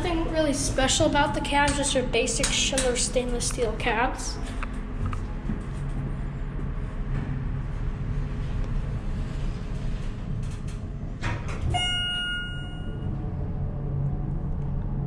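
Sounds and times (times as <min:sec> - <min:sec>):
elevator humming: 0:00.0 - 0:15.0
elevator chime: 0:11.6 - 0:13.4.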